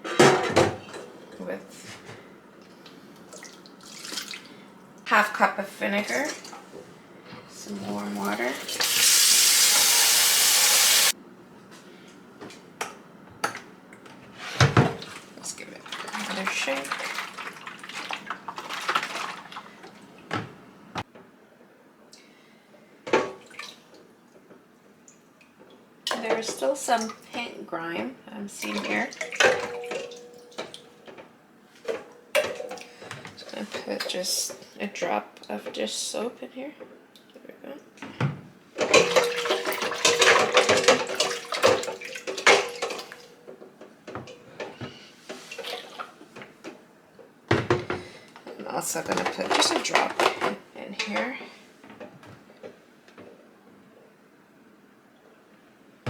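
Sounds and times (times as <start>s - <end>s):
liquid sloshing in container: 3.2s - 4.6s, 14.7s - 20.1s, 38.8s - 43.3s.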